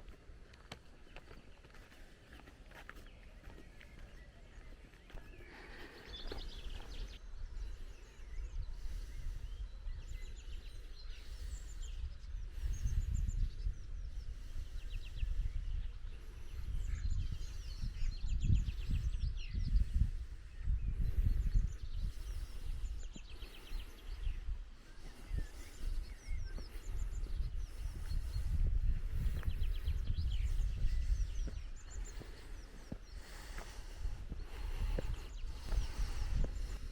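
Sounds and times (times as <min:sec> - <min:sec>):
songbirds trilling: 0:00.0 - 0:36.9
low gusting rumble: 0:24.1 - 0:36.9.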